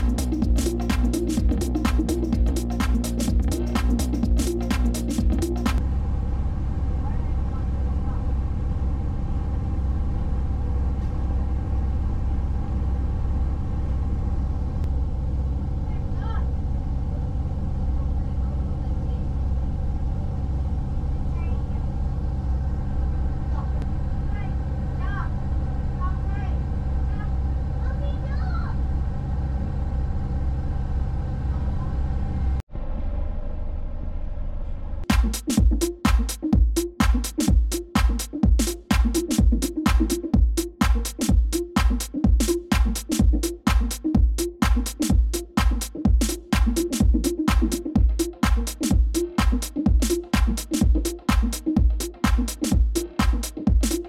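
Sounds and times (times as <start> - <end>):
boat engine rumbling: 0.0 - 35.0.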